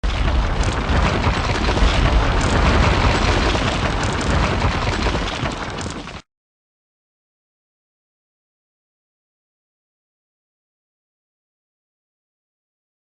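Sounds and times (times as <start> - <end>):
explosion rumbling blast: 0.0 - 6.2.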